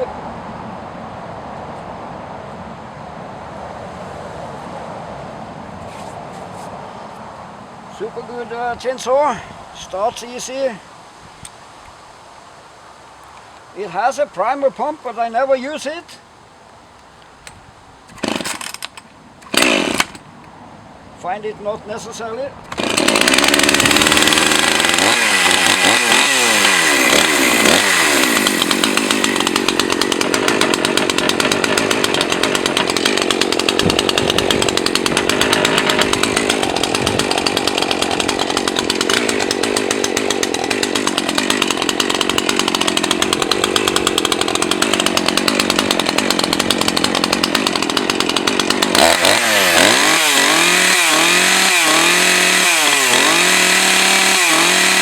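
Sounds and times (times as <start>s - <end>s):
chainsaw cutting through log: 18.2s - 20.3s, 22.7s - 55.0s.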